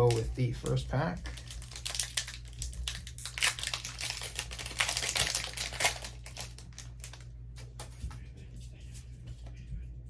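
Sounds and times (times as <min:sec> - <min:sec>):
foil pack crinkling: 0:00.0 - 0:08.0.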